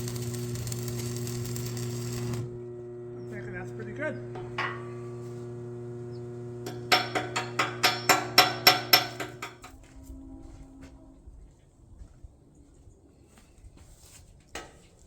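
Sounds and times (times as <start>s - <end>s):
arc welder humming: 0.0s - 9.8s
hammer strikes on steel: 4.4s - 5.0s, 6.7s - 9.8s.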